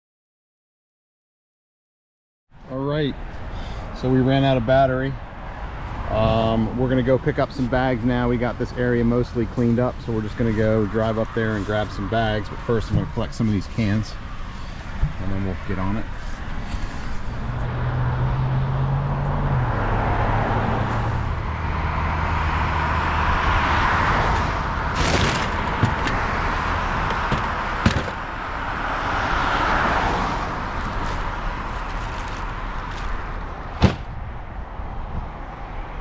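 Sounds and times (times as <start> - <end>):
cars passing on wet road: 3.3 - 36.0
sharp knocks: 27.0 - 28.2, 33.8 - 34.2.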